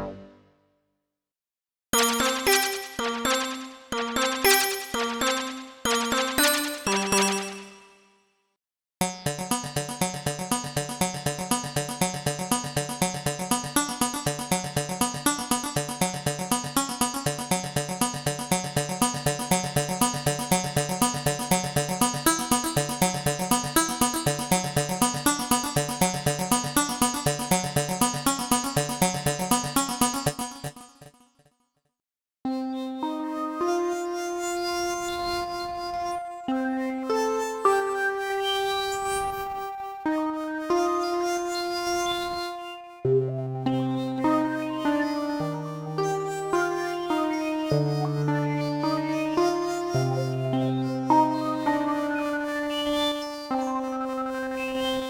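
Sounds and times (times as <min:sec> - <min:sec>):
synthesizer repeating short notes: 0:02.0 - 0:07.8.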